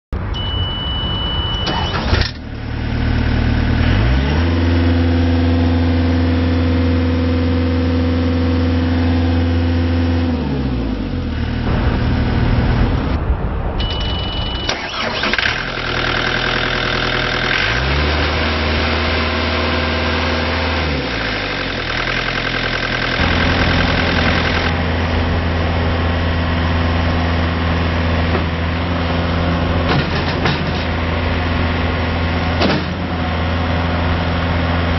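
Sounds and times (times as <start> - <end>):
diesel engine running: 0.2 - 34.9
electronic warning beep: 0.3 - 2.1, 13.8 - 15.0, 22.4 - 24.7.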